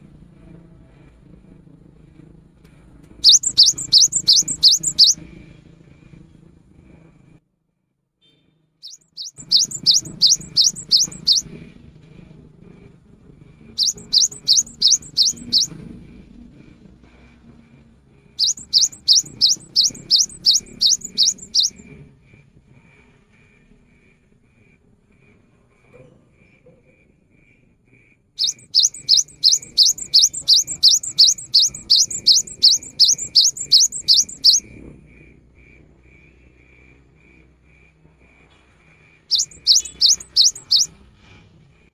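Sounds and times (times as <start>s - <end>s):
bird singing whistled notes: 3.2s - 5.2s, 8.8s - 11.5s, 13.8s - 15.8s, 18.4s - 21.8s, 28.4s - 34.7s, 39.3s - 40.9s
low background hum: 18.4s - 21.9s.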